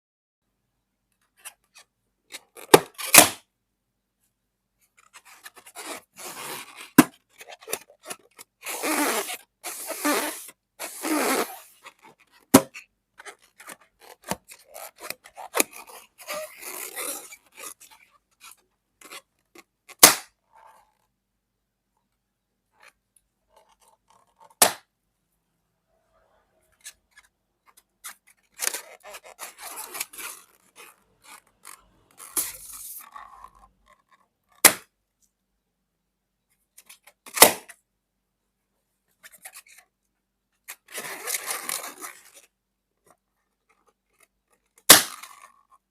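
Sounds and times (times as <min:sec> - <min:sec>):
balloons popping: 0:02.6 - 0:03.4, 0:08.6 - 0:17.7, 0:19.9 - 0:20.4, 0:24.6 - 0:24.9, 0:34.6 - 0:34.9, 0:37.3 - 0:37.7, 0:44.9 - 0:45.5
balloons squeaking and rubbing: 0:05.0 - 0:21.0, 0:28.0 - 0:34.6, 0:40.8 - 0:42.5.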